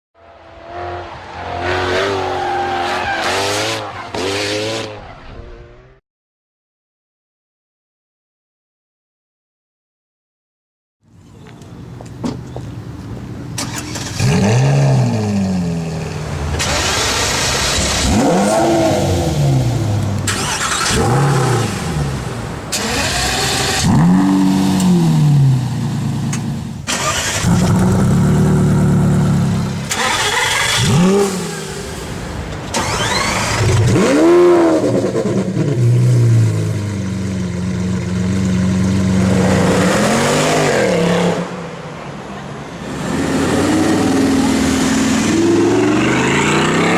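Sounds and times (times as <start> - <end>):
supercar engines revving: 13.2 - 46.9.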